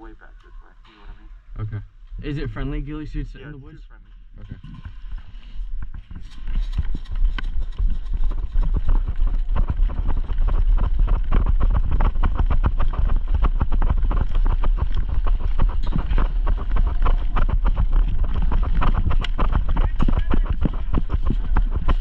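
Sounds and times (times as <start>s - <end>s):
wind rumble on microphone: 4.4s - 22.0s.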